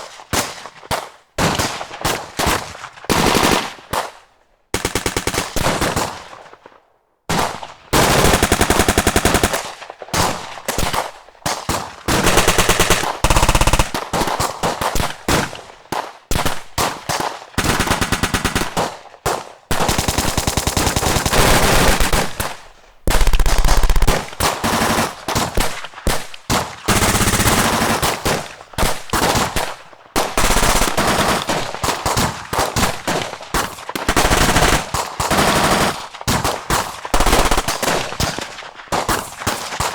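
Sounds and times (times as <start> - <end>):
machine-gun bursts: 8.0 - 11.0, 12.1 - 14.8, 17.6 - 19.0, 19.7 - 26.2, 26.8 - 33.2, 36.8 - 38.0
single gunshots: 21.4 - 26.6.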